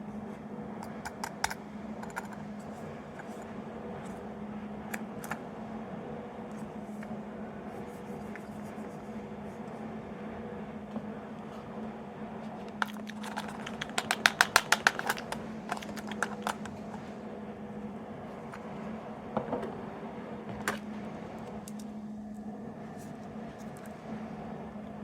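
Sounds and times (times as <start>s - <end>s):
steady low hum: 0.0s - 25.0s
sharp clicks of small objects: 12.8s - 16.7s.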